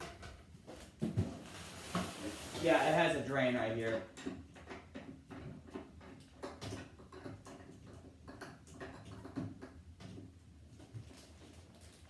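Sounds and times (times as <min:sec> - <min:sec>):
hands clicking and tapping plastic: 0:03.9 - 0:10.4.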